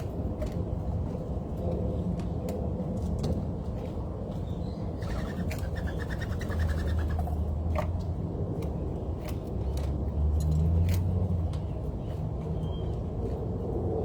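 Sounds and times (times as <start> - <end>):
bird trilling: 5.0 - 7.3.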